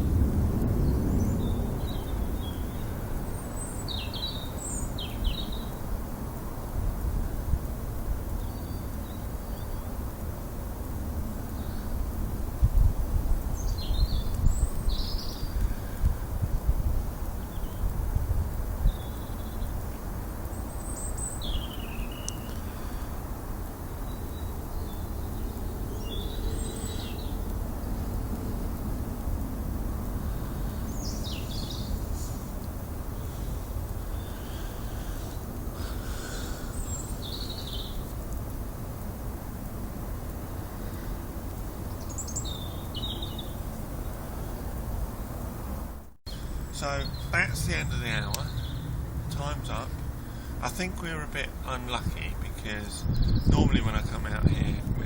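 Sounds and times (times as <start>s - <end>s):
low outdoor rumble: 0.0s - 55.0s
birds chirping: 0.8s - 5.8s, 13.5s - 16.2s, 18.8s - 29.0s, 29.8s - 38.2s, 40.8s - 44.7s, 46.3s - 55.0s.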